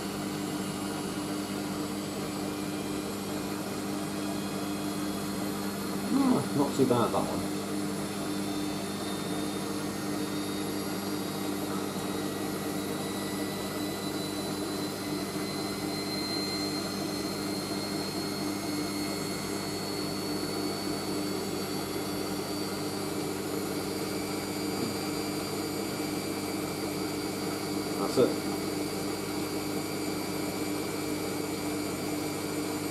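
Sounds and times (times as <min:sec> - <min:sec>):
motor hum: 0:00.0 - 0:32.9
washing machine spinning: 0:00.0 - 0:32.9
high rising whine: 0:04.4 - 0:29.2.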